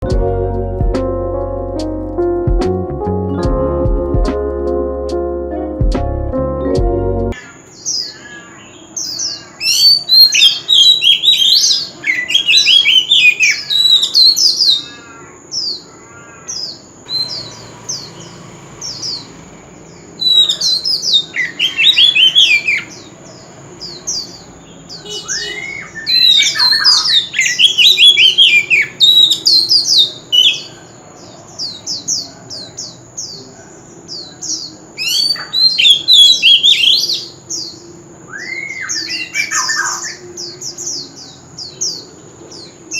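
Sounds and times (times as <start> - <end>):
bird singing whistled phrases: 9.6 - 14.9, 17.1 - 18.4, 20.2 - 22.9, 24.2 - 30.8, 35.0 - 40.2.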